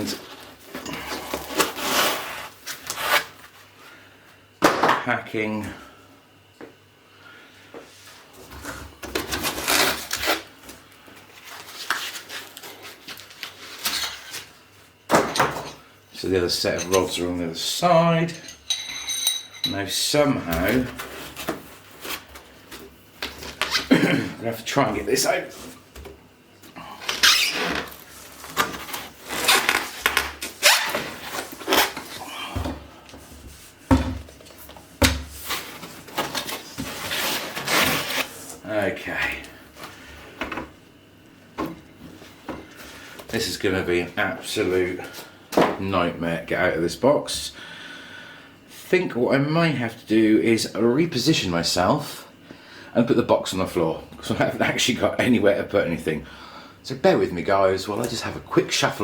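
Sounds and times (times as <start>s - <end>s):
packing material scraping and rubbing: 1.2s - 3.5s, 9.3s - 10.5s, 27.2s - 32.2s, 35.4s - 38.6s
cardboard rubbing and scraping: 35.4s - 38.5s.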